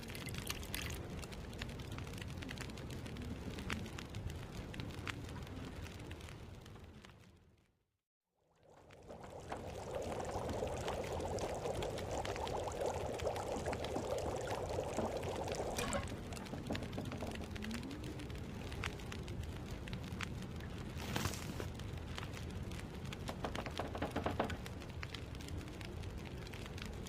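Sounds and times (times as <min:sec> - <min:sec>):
stew bubbling in a pot: 0:00.0 - 0:03.9, 0:08.4 - 0:21.0.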